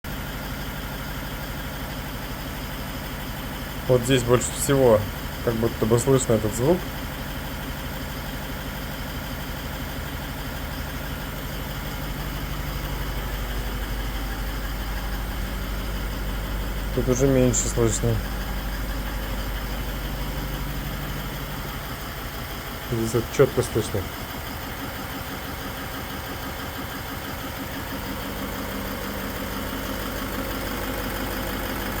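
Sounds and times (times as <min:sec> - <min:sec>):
diesel engine idling: 0:00.1 - 0:32.0
steady hum: 0:10.5 - 0:24.8.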